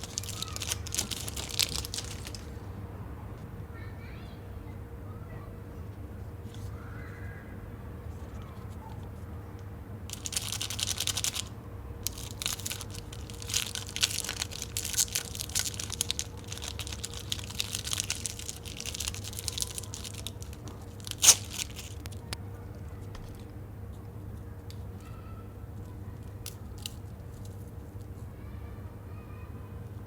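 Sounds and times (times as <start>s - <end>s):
plastic packaging crinkling and tearing: 0.0s - 2.7s, 10.1s - 22.4s.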